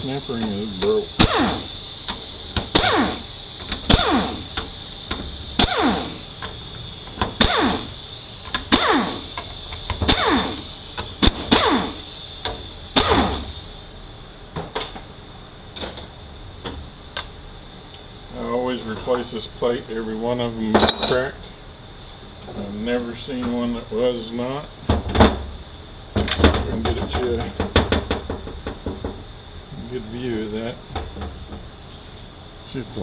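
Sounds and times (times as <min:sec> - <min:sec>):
power tool whirring: 0:00.0 - 0:04.7, 0:05.5 - 0:12.1, 0:12.9 - 0:13.6.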